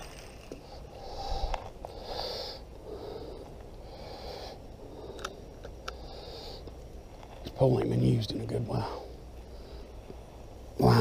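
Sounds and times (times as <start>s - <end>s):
man breathing close to microphone: 0.6s - 6.8s.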